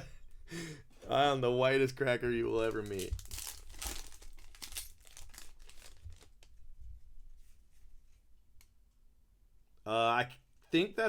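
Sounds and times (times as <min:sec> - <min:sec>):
foil wrapper crinkling and tearing: 0:02.5 - 0:06.6.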